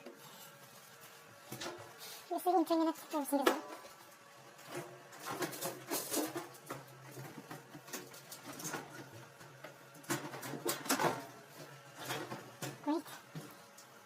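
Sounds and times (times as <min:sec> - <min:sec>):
dryer parts clicking and knocking: 0:04.7 - 0:11.4.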